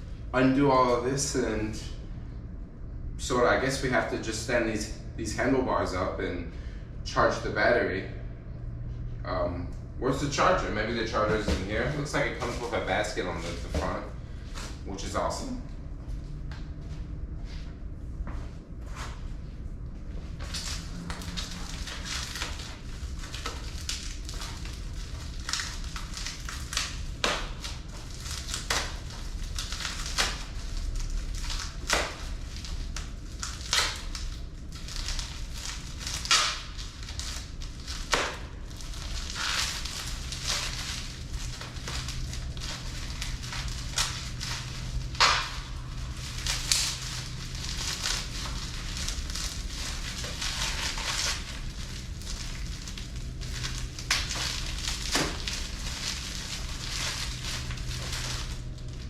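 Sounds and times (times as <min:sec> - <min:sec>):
packing material crinkling: 0:10.2 - 0:15.4, 0:20.3 - 0:59.0.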